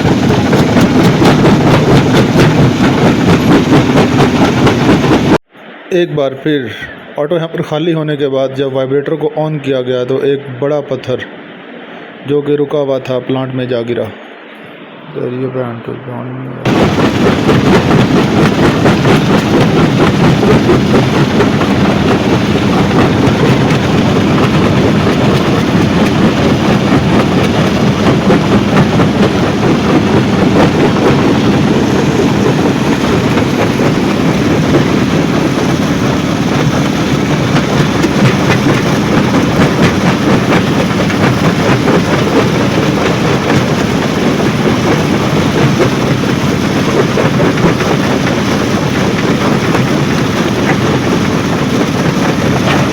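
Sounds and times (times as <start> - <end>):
crusher rumbling: 0.0 - 5.4, 16.6 - 52.9.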